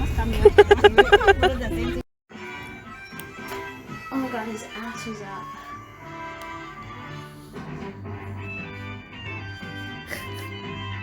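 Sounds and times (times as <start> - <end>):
held keyboard chords: 0.4 - 1.7.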